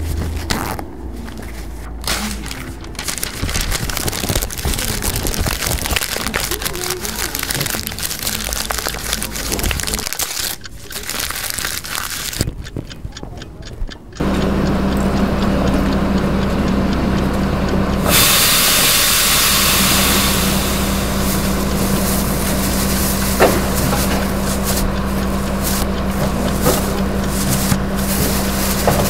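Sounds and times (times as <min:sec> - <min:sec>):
garbage truck engine running: 0:00.0 - 0:12.4, 0:14.1 - 0:29.0
loud hiss: 0:18.0 - 0:24.6.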